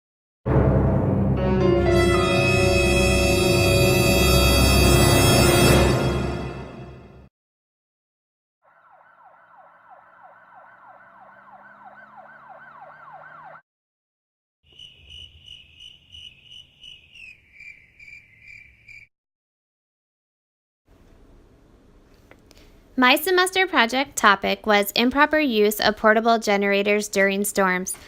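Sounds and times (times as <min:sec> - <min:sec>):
electronic siren yelping: 0:08.6 - 0:13.6.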